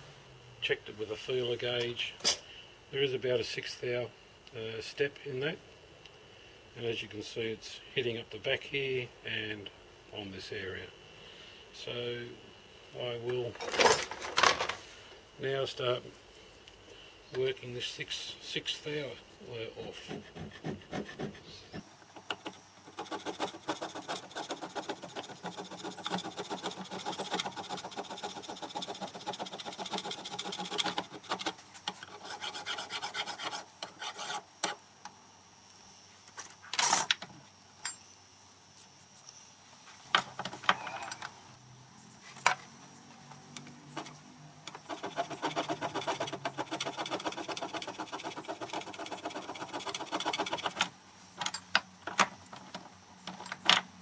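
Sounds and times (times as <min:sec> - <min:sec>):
file rasping on metal: 0:20.0 - 0:34.8, 0:44.8 - 0:50.8.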